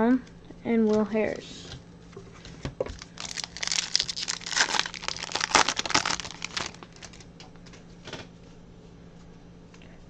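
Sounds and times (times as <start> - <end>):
wrapper tearing and crumpling: 2.9 - 7.3.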